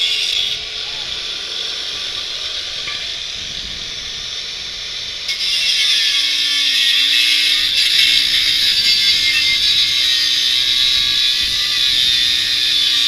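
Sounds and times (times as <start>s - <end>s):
angle grinder cutting steel: 0.0s - 13.0s.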